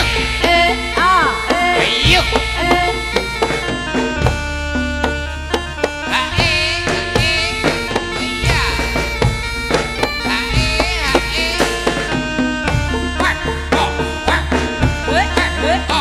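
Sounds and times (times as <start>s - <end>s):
drum strokes: 0.0s - 16.0s
reedy wind instrument melody: 0.0s - 16.0s.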